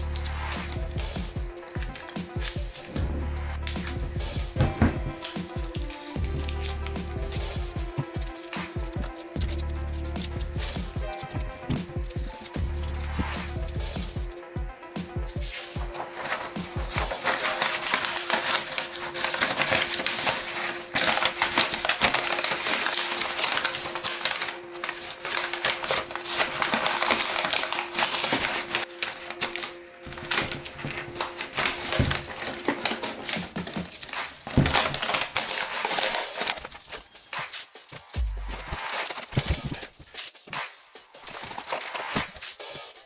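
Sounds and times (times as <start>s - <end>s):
sandpaper rubbing vinyl: 0.0s - 21.2s
quiet background music: 0.0s - 43.0s.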